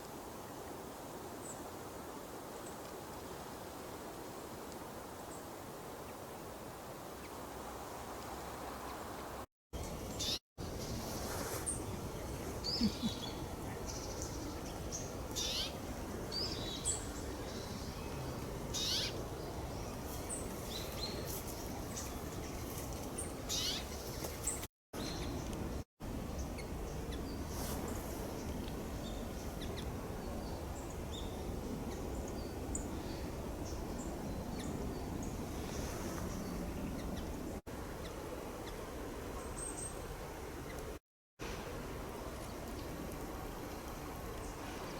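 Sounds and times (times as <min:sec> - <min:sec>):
steady outdoor hiss: 0:00.0 - 0:44.9
small birds chirping: 0:09.8 - 0:38.8.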